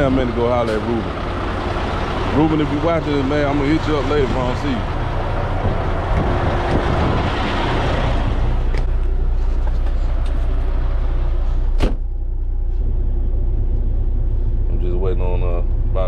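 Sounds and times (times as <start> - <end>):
diesel truck engine idling: 0.0 - 16.0
rushing noise: 4.7 - 8.7.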